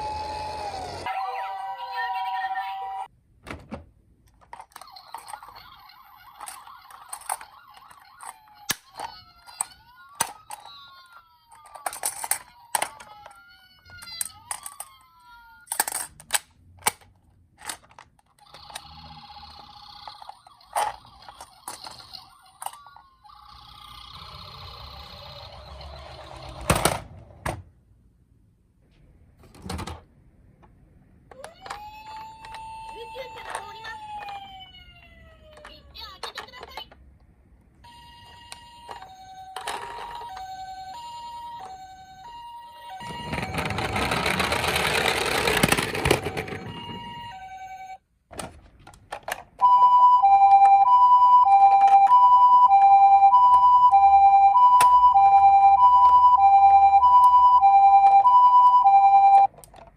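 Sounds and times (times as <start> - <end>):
toy ambulance electronic siren: 0.0 - 3.1, 4.7 - 15.6, 18.4 - 26.7, 31.4 - 36.0, 37.8 - 48.0, 49.6 - 59.5
toy clacking: 4.3 - 26.6, 31.3 - 34.5, 37.9 - 47.9
plastic toy cars rattling: 4.3 - 27.1, 31.3 - 34.6, 38.0 - 41.9, 42.9 - 47.3
electronic two-tone siren: 32.1 - 35.5, 49.6 - 59.5
toy cars rattling down a slope: 43.0 - 46.8.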